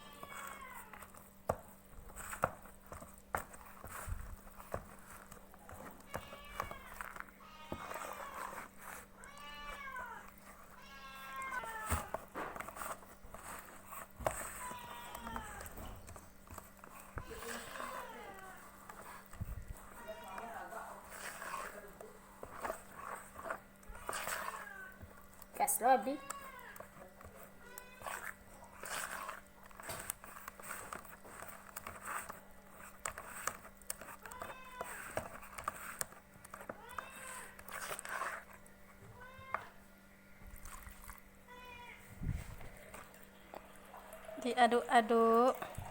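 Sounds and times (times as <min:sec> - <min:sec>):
cat meowing: 0:09.2 - 0:12.1, 0:14.6 - 0:15.8.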